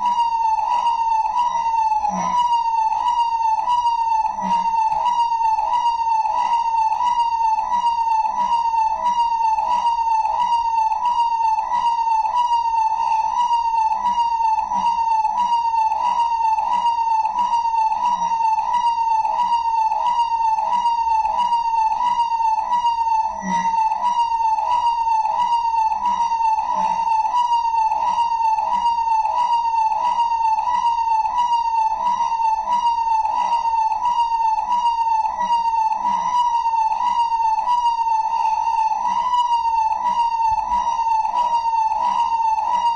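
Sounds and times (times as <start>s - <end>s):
electronic siren alarm: 0.0s - 42.9s.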